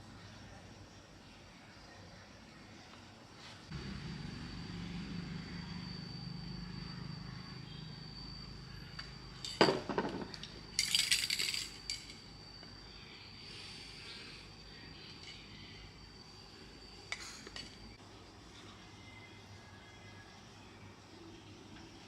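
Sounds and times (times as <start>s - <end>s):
steady high whine: 0.0s - 22.0s
low hum: 3.7s - 18.0s
sharp metallic clinks: 8.8s - 12.4s
small hard parts clattering: 9.4s - 12.3s.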